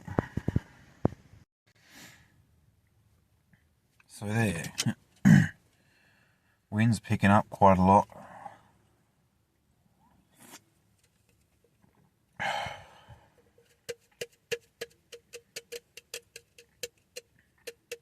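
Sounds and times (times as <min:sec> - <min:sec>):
breathy rush of air: 0:12.4 - 0:13.4.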